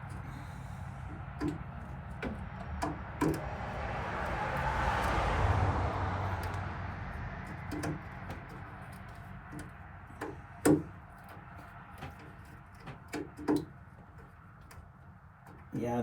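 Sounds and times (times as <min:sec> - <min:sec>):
rushing noise: 0:03.4 - 0:07.6.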